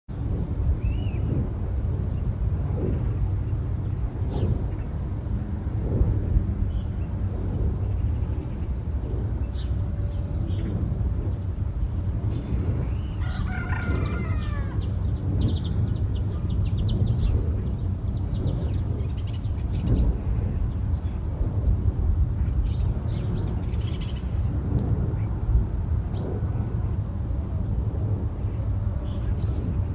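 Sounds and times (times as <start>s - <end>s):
low rumble of wind turbines: 0.1s - 29.9s
small birds chirping: 0.8s - 24.6s
rooster crowing: 13.0s - 14.9s.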